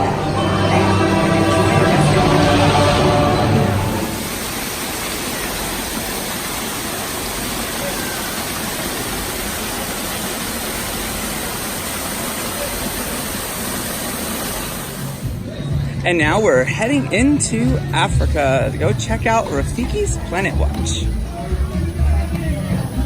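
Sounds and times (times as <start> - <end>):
music: 0.0 - 4.3, 15.2 - 23.0
steady rushing noise: 0.0 - 23.0.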